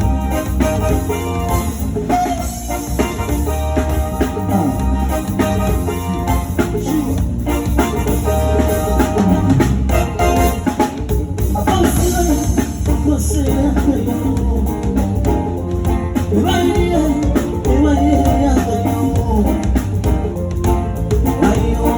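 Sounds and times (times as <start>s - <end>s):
bass guitar: 0.0s - 21.9s
drum kit steady beat: 0.0s - 21.9s
guitar: 0.0s - 21.9s
person singing: 11.5s - 21.9s.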